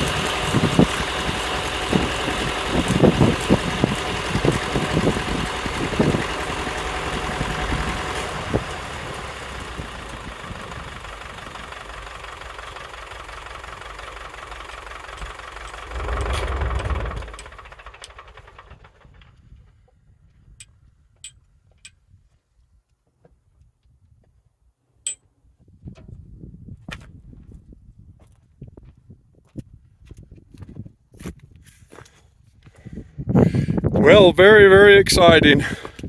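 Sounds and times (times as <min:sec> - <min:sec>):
sawmill engine running: 0:00.0 - 0:19.2
low rumble: 0:15.7 - 0:17.9.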